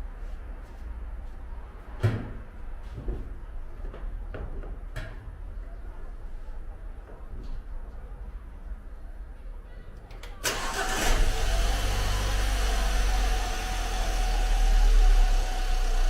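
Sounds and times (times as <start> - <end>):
car engine cranking and idling: 10.4 - 16.0.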